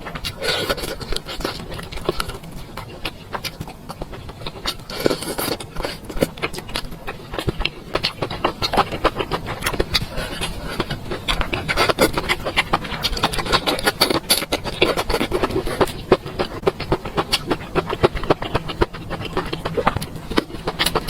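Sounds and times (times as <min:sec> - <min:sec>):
person chewing with wet mouth clicks: 0:00.0 - 0:21.0.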